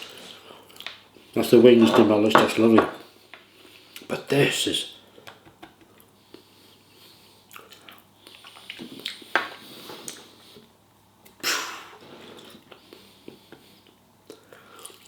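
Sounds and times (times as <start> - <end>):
man chewing: 5.8 - 11.4, 12.0 - 15.0.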